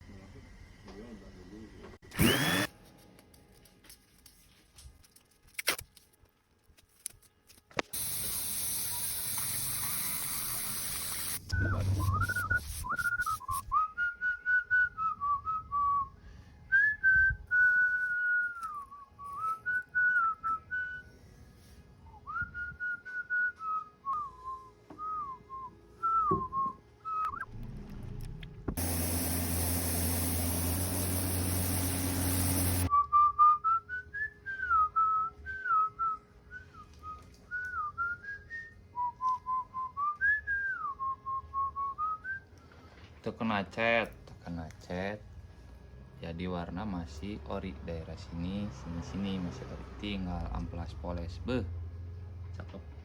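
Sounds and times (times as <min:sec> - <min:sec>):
machine hissing over hum: 0:08.0 - 0:12.0, 0:28.8 - 0:32.9
person whistling a tune: 0:11.5 - 0:21.2, 0:22.1 - 0:27.5, 0:32.9 - 0:42.7.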